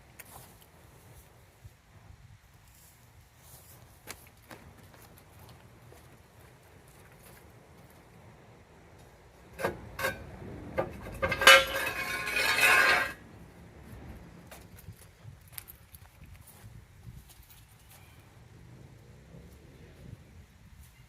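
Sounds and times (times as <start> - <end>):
metal parts clinking: 10.8 - 13.2
metallic jangling rattle: 10.8 - 13.2.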